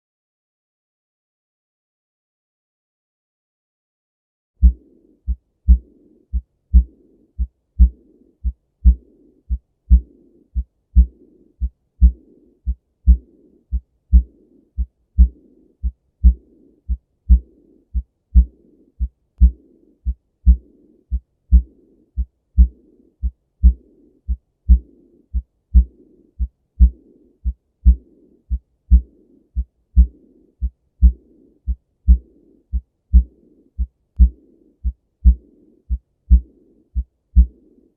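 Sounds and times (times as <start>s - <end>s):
heartbeat: 4.6s - 37.7s
soft blowing heart murmur: 4.6s - 37.7s.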